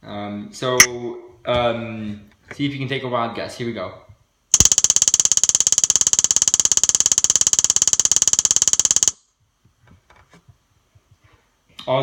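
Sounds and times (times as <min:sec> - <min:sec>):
electronic castanets rapid clicks: 0:04.6 - 0:09.2.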